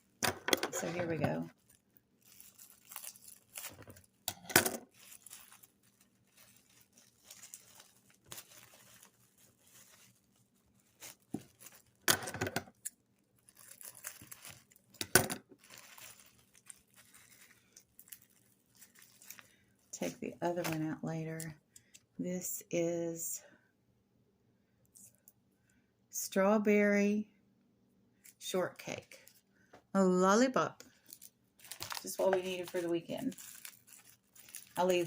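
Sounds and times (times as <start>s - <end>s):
plastic wrapping crinkling and tearing: 0.8s - 20.9s, 30.9s - 35.0s.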